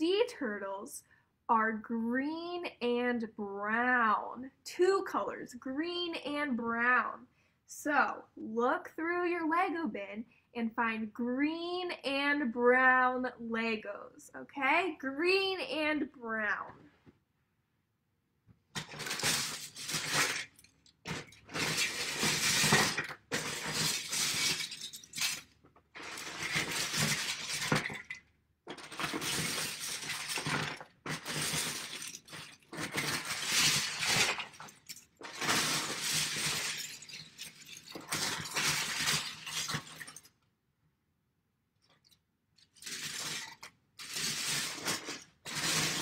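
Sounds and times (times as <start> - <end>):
plastic bricks rattling: 18.7 - 40.3, 42.0 - 46.0.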